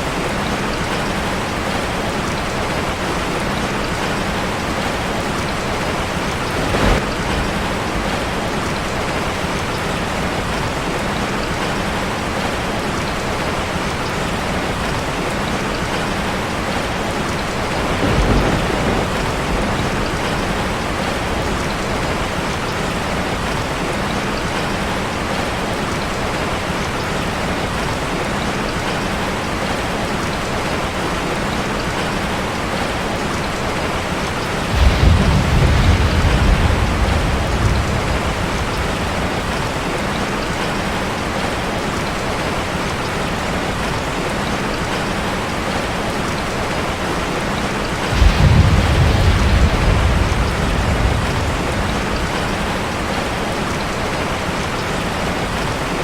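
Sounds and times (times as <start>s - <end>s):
steady rain falling: 0.0s - 56.0s
low rumbles of thunder: 4.7s - 11.6s, 17.4s - 22.5s, 34.6s - 40.7s, 47.9s - 54.2s.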